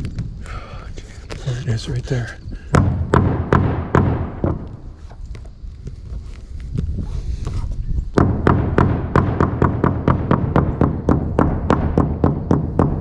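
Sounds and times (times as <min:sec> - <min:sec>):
hammer striking plywood: 0:02.7 - 0:04.8, 0:08.2 - 0:13.0.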